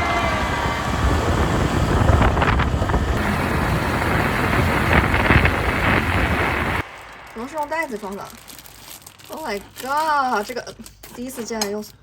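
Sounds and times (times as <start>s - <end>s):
wind buffeting microphone: 0.0s - 8.6s
steady low rumble: 0.3s - 9.3s.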